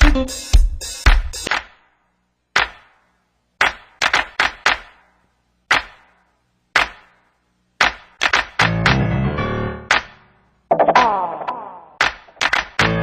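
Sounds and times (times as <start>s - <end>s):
sharp knocks: 3.6s - 5.0s, 6.8s - 7.2s, 7.8s - 9.0s.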